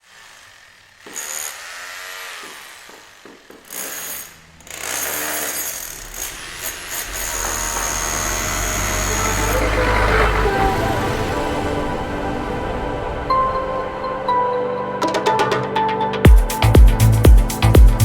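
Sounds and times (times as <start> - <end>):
power tools whining: 0.0 - 14.3
low rumble: 5.9 - 14.3.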